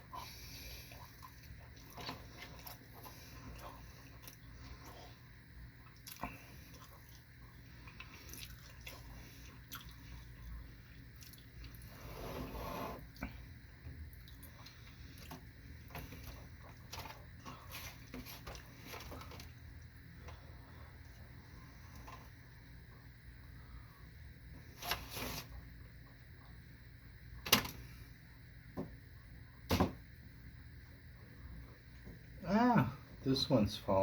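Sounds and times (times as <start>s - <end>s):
person chewing food: 0.0s - 11.9s, 14.1s - 21.3s.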